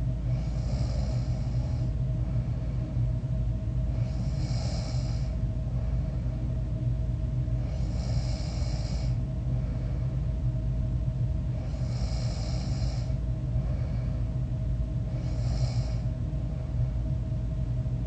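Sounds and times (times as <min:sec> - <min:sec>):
steady low hum: 0:00.0 - 0:18.0
person snoring: 0:00.3 - 0:01.9, 0:04.0 - 0:05.3, 0:07.6 - 0:09.2, 0:11.6 - 0:13.2, 0:15.1 - 0:16.1.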